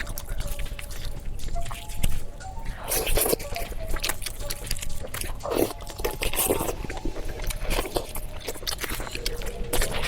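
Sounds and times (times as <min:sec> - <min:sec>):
person biting and chewing: 0:00.0 - 0:10.0.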